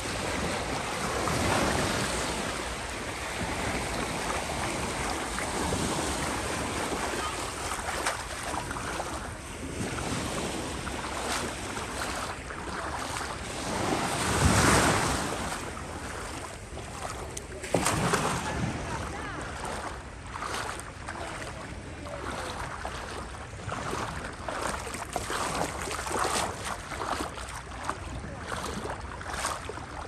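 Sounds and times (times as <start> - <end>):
waves washing in: 0.0 - 30.0
wave crashing: 13.6 - 16.0.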